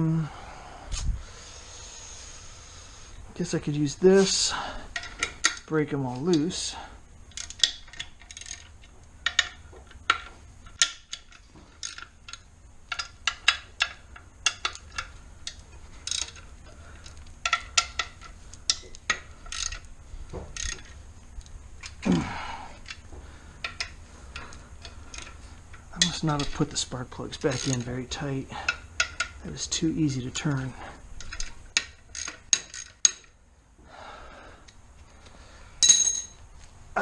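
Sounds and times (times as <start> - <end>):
ratchet wrench clicking: 7.3 - 21.9, 26.0 - 29.8, 31.2 - 33.4.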